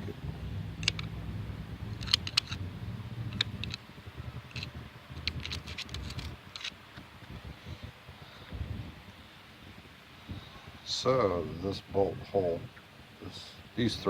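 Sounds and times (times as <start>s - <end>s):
low hum: 0.0s - 11.6s
screwdriver clicking on metal: 2.0s - 2.6s.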